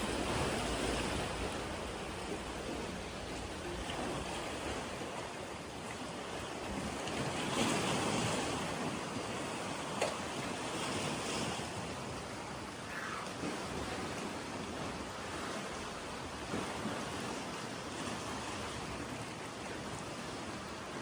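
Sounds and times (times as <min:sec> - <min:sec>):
rain falling on lake water: 0:00.0 - 0:07.4.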